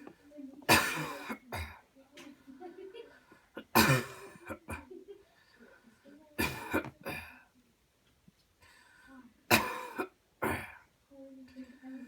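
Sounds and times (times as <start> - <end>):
person coughing hard: 0.7 - 1.8, 3.6 - 4.9, 6.4 - 7.4, 9.5 - 10.8.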